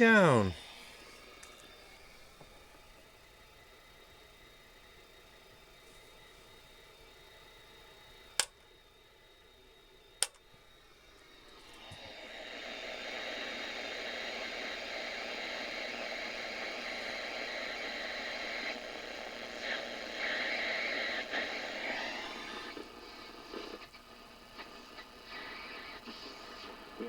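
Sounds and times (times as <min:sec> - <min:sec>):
radio static hiss: 0:00.0 - 0:00.6, 0:14.0 - 0:27.0.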